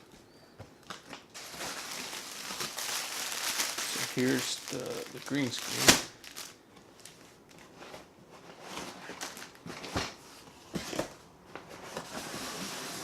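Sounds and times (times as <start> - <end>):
soft rustling: 1.4 - 9.7.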